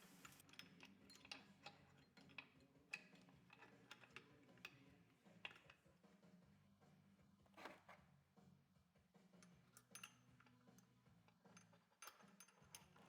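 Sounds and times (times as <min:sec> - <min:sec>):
small metal parts clicking: 0:00.2 - 0:04.8, 0:09.8 - 0:13.0.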